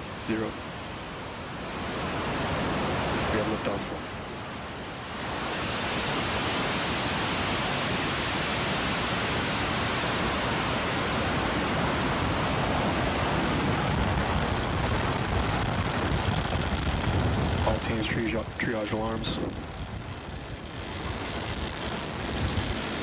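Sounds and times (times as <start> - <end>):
rocket engines roaring: 5.4 - 23.0.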